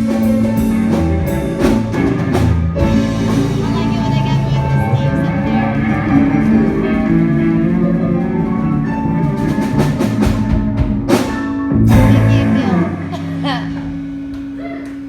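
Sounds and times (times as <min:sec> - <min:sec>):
drum and cymbal hits: 0:00.0 - 0:14.1
live band playing: 0:00.0 - 0:14.6.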